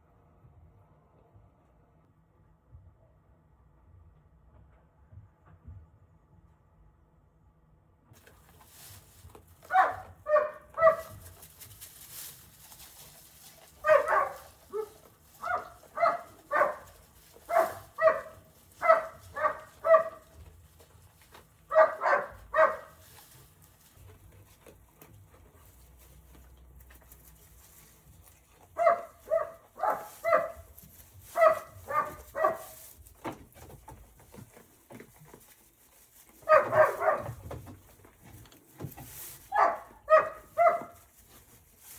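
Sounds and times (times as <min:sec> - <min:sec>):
dog barking: 0:09.6 - 0:11.4, 0:13.7 - 0:20.5, 0:21.7 - 0:23.0, 0:28.8 - 0:32.8, 0:36.4 - 0:37.5, 0:39.5 - 0:41.0.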